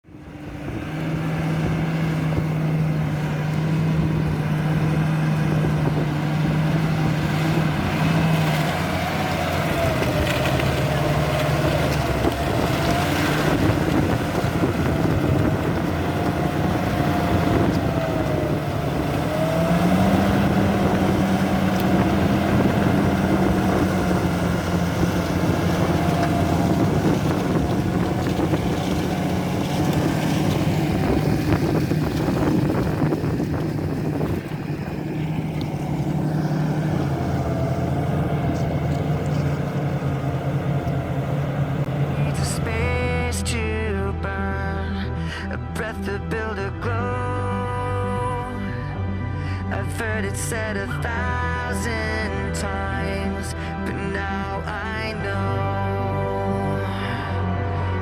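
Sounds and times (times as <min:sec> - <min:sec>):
tractor diesel engine running: 0:00.0 - 0:58.0.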